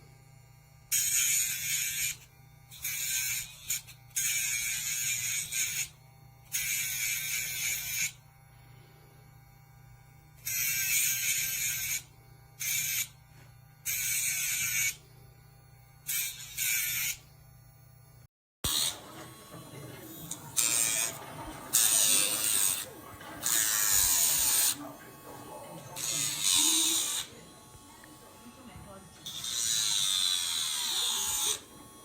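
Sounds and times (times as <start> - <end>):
electric nail grinder humming: 0.0 - 32.0
grinding hiss on dog nails: 20.0 - 31.9.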